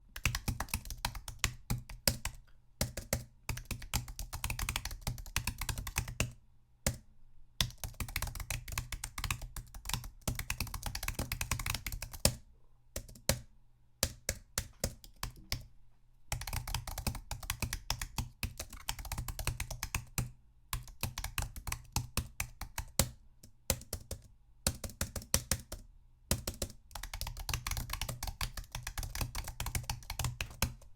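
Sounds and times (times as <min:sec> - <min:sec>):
laptop keyboard typing: 0:00.2 - 0:07.0, 0:07.6 - 0:12.4, 0:13.0 - 0:13.4, 0:14.0 - 0:15.6, 0:16.3 - 0:30.9.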